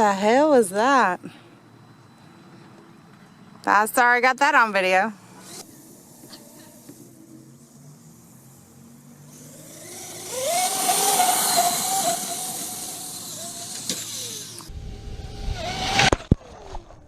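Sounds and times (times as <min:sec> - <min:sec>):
electric motor whining: 0:05.2 - 0:16.8
low rumble: 0:14.7 - 0:17.0.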